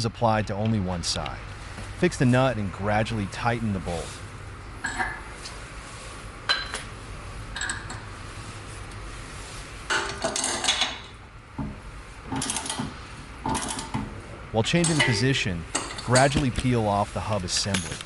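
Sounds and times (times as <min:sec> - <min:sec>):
metallic rasping: 0:14.7 - 0:16.4.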